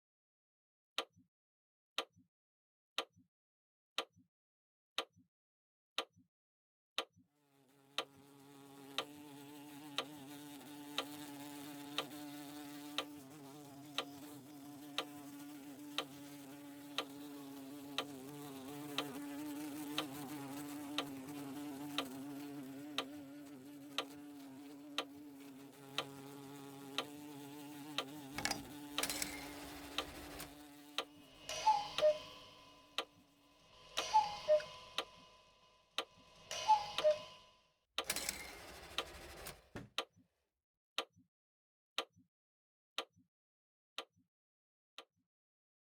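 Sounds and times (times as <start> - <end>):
clock ticking: 16.0 - 16.2, 17.0 - 17.2, 18.0 - 19.2, 19.8 - 22.2, 24.0 - 24.2, 25.0 - 25.2, 25.9 - 26.3, 26.9 - 27.2, 27.9 - 33.1, 33.9 - 35.3, 36.0 - 37.3, 38.0 - 40.2.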